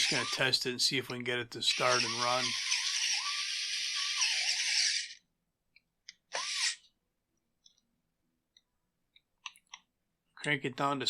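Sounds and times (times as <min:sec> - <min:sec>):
cordless drill motor whine: 0:00.0 - 0:00.4, 0:01.7 - 0:05.2.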